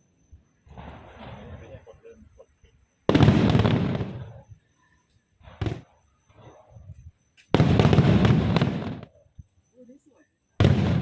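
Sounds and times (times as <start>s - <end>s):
fireworks bursting: 0.6s - 2.1s, 3.0s - 4.6s, 5.4s - 9.2s, 10.6s - 11.0s
crackling firework burst: 3.0s - 4.4s, 5.4s - 6.8s, 7.5s - 9.2s, 10.6s - 11.0s.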